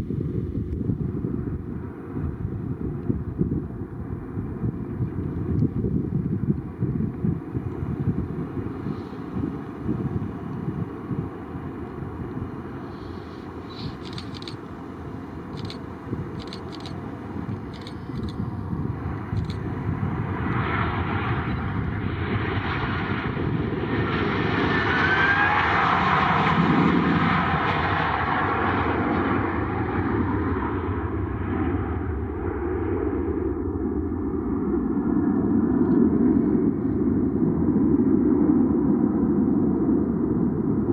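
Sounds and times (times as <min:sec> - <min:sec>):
helicopter rotor drone: 0:00.0 - 0:24.2
short clicks: 0:13.7 - 0:14.6, 0:15.5 - 0:15.8, 0:16.4 - 0:18.4.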